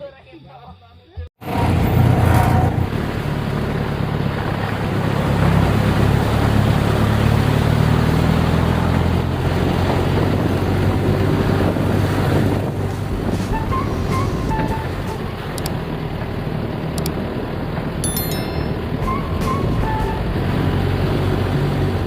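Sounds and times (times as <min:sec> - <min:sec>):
road noise: 0:01.4 - 0:22.0
engine running: 0:01.5 - 0:13.4
wind noise on microphone: 0:08.8 - 0:16.0.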